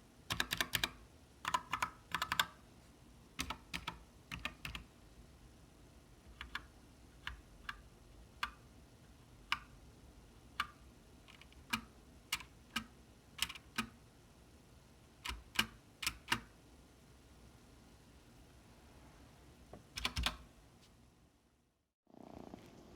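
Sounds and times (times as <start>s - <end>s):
mechanical keyboard key clacks: 0.3s - 2.5s, 11.3s - 13.9s, 15.3s - 16.5s.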